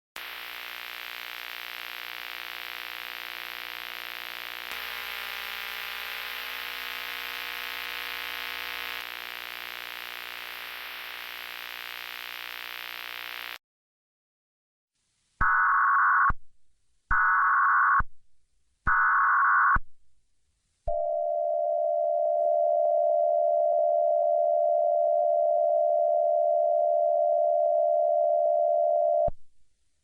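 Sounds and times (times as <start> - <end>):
electrical hum: 0.2 - 13.6
static hiss: 0.2 - 13.6.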